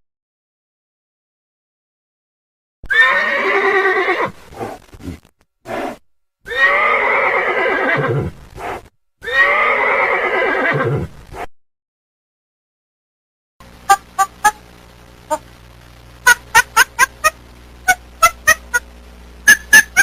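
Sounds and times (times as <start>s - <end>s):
horse whinnying: 2.8s - 4.8s, 5.7s - 11.2s.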